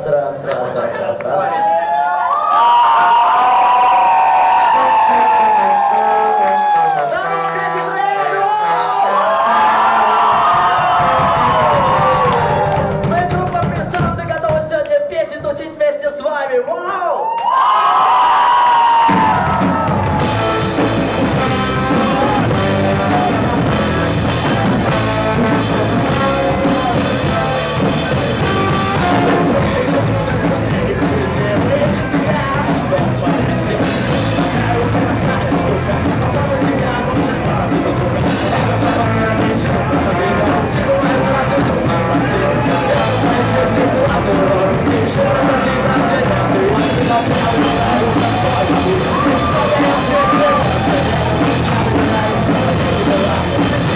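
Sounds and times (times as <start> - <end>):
rock band playing live: 10.2 - 14.2, 19.0 - 53.9
person singing: 19.1 - 53.9.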